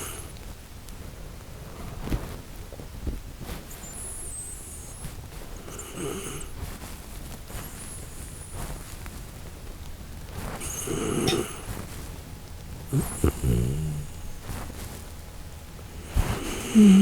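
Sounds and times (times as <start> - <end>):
dog snoring: 0.0 - 0.3, 3.7 - 6.9, 7.5 - 9.1, 10.3 - 12.1, 12.7 - 15.2, 15.8 - 17.0.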